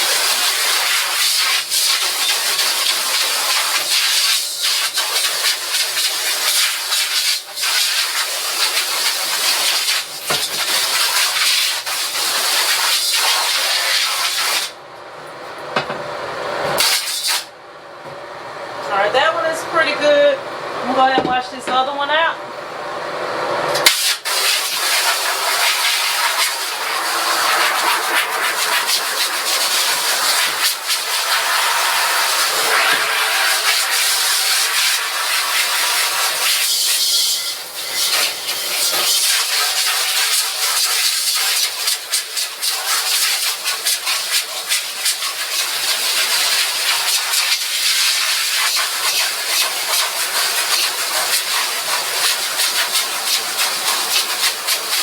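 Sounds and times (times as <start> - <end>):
pressure washer spraying water: 0.0 - 14.8, 16.8 - 17.5, 23.8 - 55.0.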